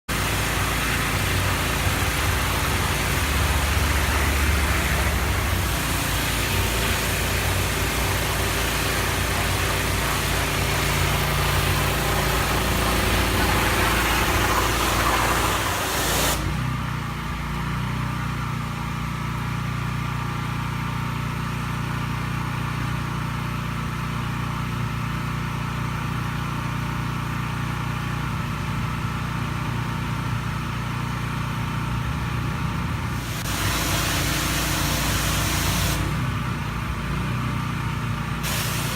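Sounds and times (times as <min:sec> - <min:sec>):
pressure washer jet hissing: 0:00.1 - 0:16.6, 0:33.1 - 0:36.3, 0:38.4 - 0:38.9
engine hum: 0:00.1 - 0:38.9.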